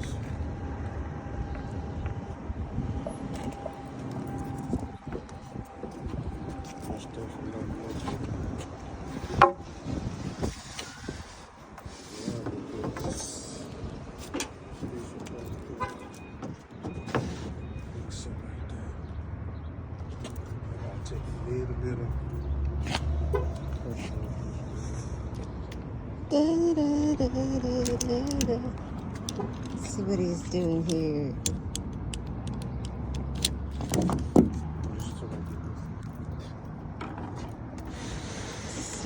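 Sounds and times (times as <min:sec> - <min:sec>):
steady traffic noise: 0:00.0 - 0:39.0
person humming long notes: 0:26.3 - 0:28.8.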